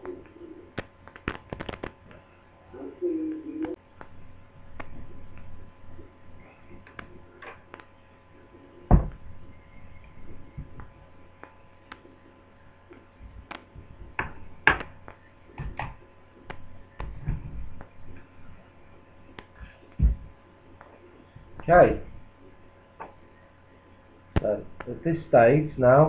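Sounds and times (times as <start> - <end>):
laptop parts clicking and knocking: 14.2 - 15.0.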